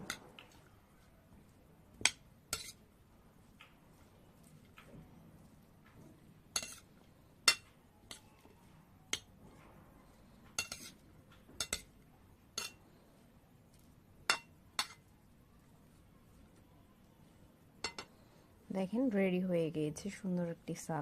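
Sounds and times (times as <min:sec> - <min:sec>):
spoon clinking against bowl: 0:17.8 - 0:18.1.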